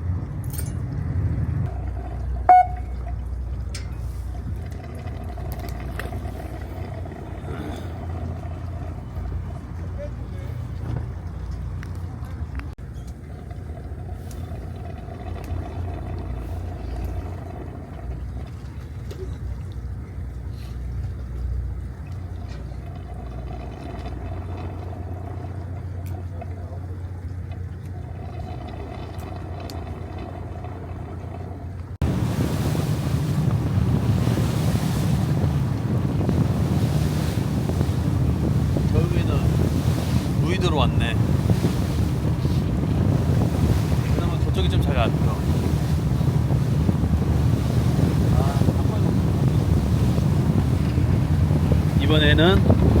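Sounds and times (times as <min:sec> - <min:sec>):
wind buffeting microphone: 0:00.0 - 0:25.8, 0:28.0 - 0:53.0
boat engine droning: 0:00.0 - 0:53.0
rushing wind and water: 0:00.0 - 0:53.0.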